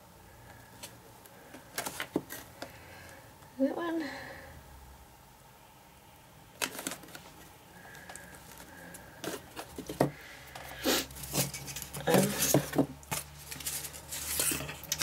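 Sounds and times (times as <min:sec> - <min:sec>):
cardboard tapping and scraping: 0:01.7 - 0:02.5, 0:08.5 - 0:15.0.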